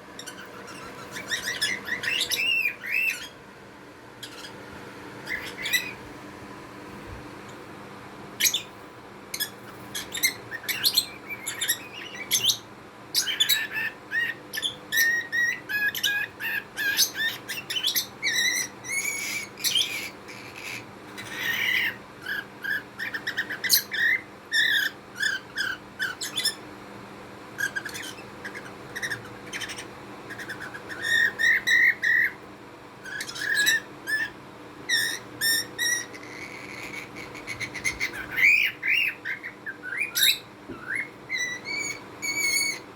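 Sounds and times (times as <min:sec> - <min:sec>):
budgerigar chattering and warbling: 0:00.2 - 0:03.4, 0:05.2 - 0:06.0, 0:27.6 - 0:32.4, 0:33.0 - 0:42.8.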